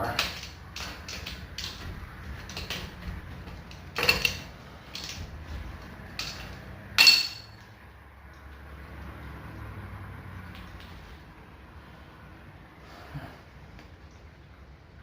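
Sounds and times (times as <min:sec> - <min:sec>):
metal tools clinking: 0:03.6 - 0:05.3, 0:06.2 - 0:07.6.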